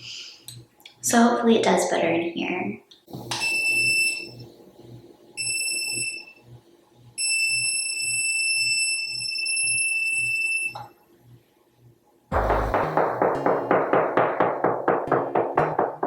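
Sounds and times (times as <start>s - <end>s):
music: 12.3s - 14.2s.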